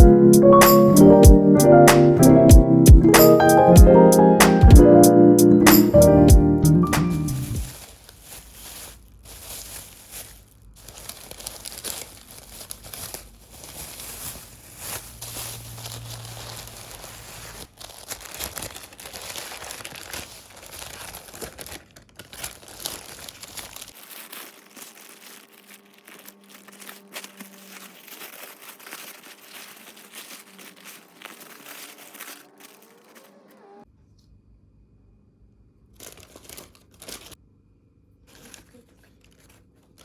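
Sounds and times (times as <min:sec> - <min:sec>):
crinkling rustling: 0:07.4 - 0:33.7, 0:36.0 - 0:37.4, 0:38.2 - 0:40.0.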